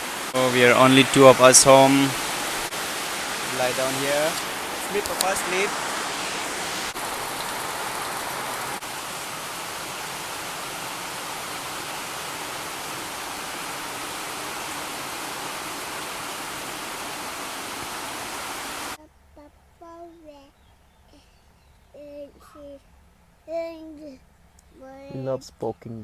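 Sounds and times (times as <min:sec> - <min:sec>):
heavy rain hiss: 0:00.0 - 0:19.0.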